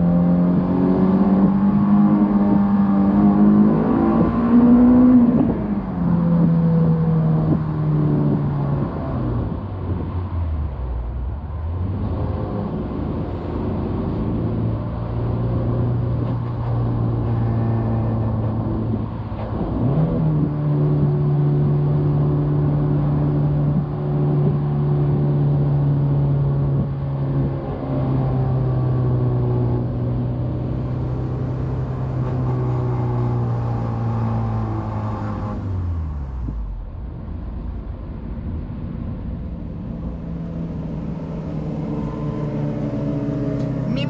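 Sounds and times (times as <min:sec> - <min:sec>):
car engine while driving: 0:00.0 - 0:44.0.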